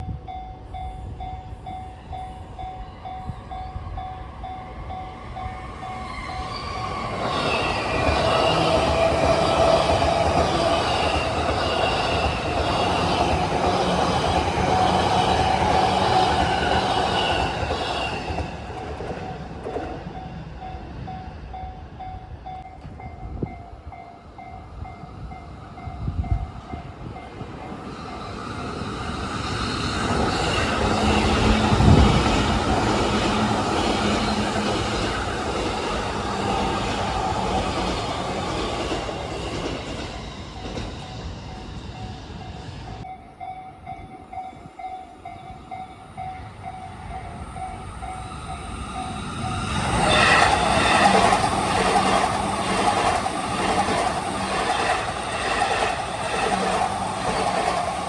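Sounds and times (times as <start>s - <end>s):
level crossing warning bell: 0.0s - 11.2s, 42.4s - 58.0s
electric train passing: 0.0s - 58.0s.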